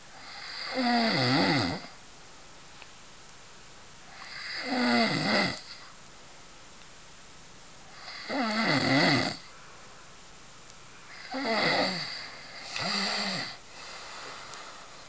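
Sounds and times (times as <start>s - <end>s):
loud rattling snoring: 0.2s - 2.0s, 4.1s - 5.8s, 7.9s - 9.5s, 11.1s - 13.6s.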